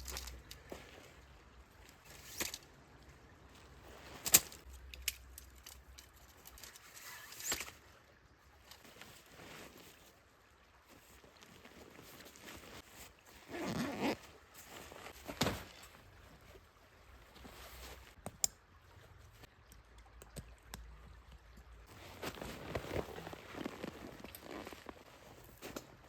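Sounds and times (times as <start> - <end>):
camping gear clicks and knocks: 0.0 - 7.8, 11.0 - 16.6, 21.9 - 26.0.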